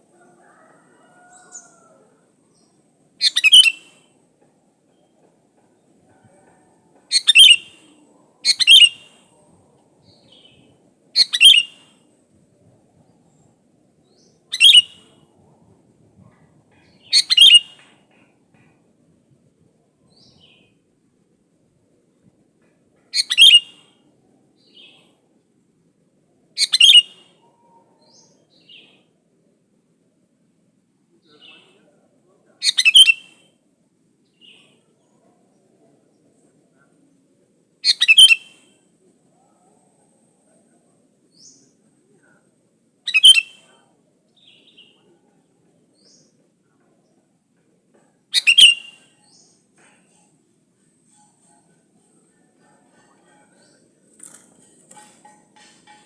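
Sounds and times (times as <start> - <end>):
faint bird chirps: 6.1 - 12.0, 13.0 - 15.5, 16.2 - 18.8, 37.8 - 54.0
bird chattering calls: 17.0 - 17.8.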